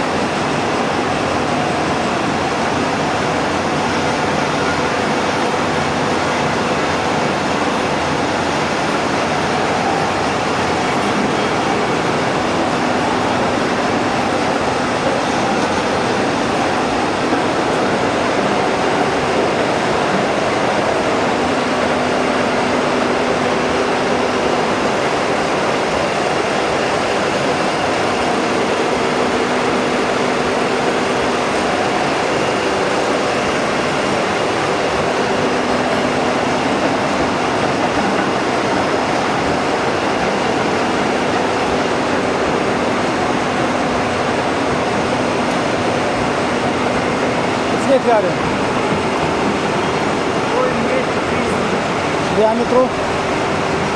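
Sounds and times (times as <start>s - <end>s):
metal lathe running: 0.0s - 53.9s.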